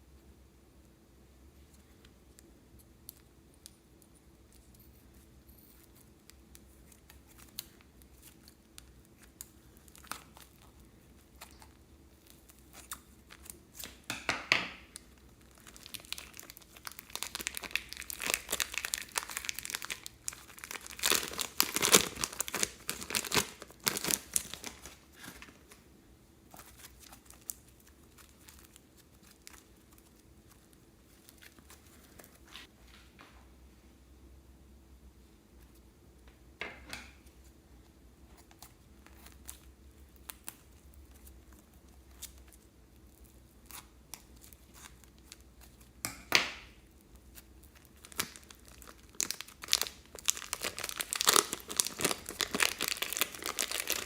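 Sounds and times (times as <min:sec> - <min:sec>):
plastic bags crinkling: 0:14.8 - 0:25.8, 0:26.5 - 0:32.6, 0:46.7 - 0:54.0.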